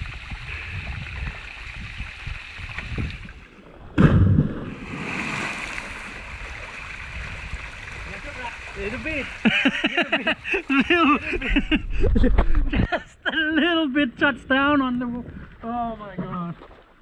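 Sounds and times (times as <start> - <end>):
rushing water: 0.0 - 11.6
heavy splash into water: 3.8 - 8.8.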